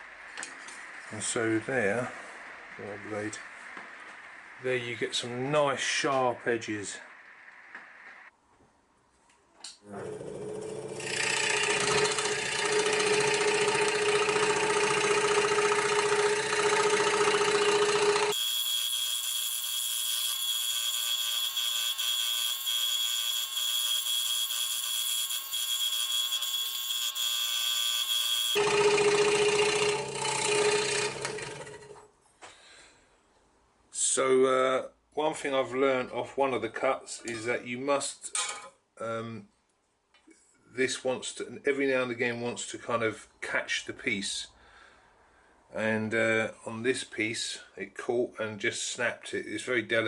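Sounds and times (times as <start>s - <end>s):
scroll saw cutting wood: 10.0s - 32.0s.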